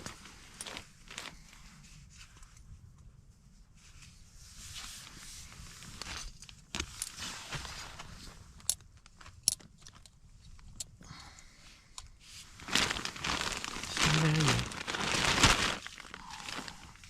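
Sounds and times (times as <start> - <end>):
cooking gear rustling: 12.5 - 17.0.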